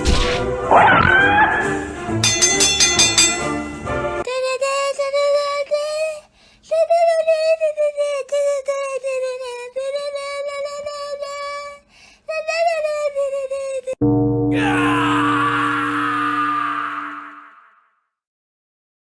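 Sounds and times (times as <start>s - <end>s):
high drawn-out voice-like cry: 14.5s - 17.9s.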